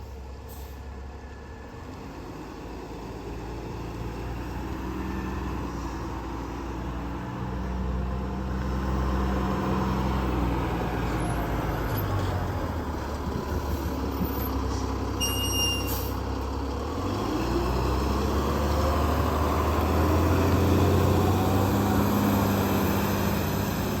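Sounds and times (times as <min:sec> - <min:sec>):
diesel engine revving: 0:01.8 - 0:24.0
short high-pitched beep: 0:15.2 - 0:16.1.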